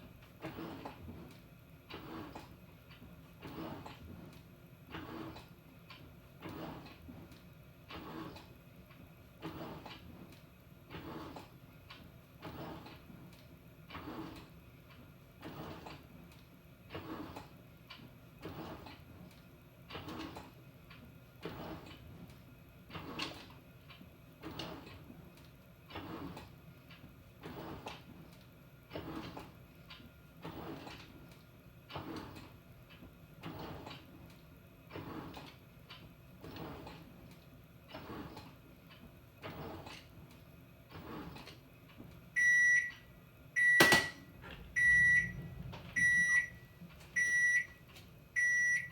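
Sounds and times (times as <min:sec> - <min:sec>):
washing machine drum swishing laundry: 0:00.0 - 0:48.9
short electronic beeps: 0:43.6 - 0:44.2, 0:44.8 - 0:45.4, 0:46.0 - 0:47.8, 0:48.4 - 0:48.9.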